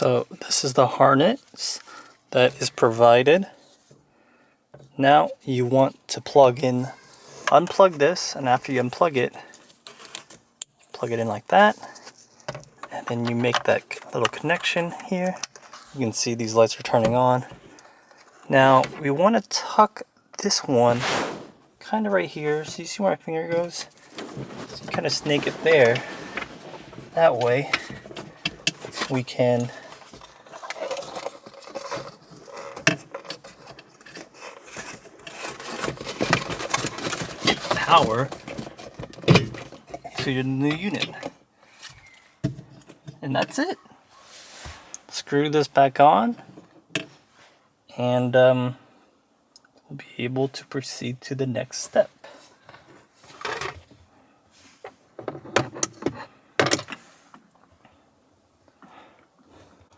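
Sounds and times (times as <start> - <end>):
wiring and plastic trim rustling: 6.4 - 19.8, 22.1 - 43.8.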